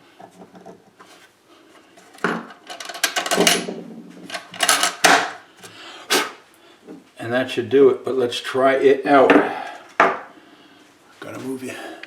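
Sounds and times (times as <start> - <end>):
clicking and rattling hardware: 2.1 - 5.7.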